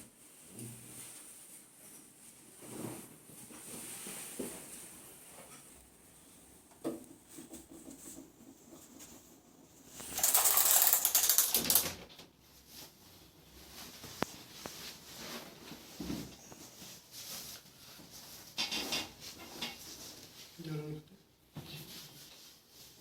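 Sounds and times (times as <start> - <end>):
body rustling on treatment table: 0.0 - 9.0, 12.5 - 18.6
crackling clicks: 10.0 - 12.2.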